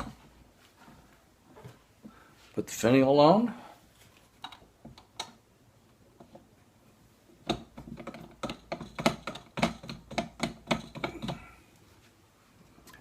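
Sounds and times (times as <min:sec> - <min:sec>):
small clicks and taps: 0:07.4 - 0:11.4.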